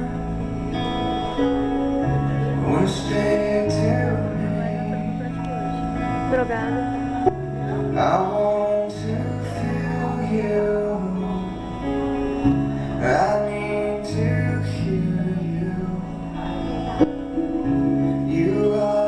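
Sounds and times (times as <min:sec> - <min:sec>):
guitar: 0:00.0 - 0:19.0
person singing: 0:00.0 - 0:19.0
sustained bass notes: 0:00.0 - 0:19.0.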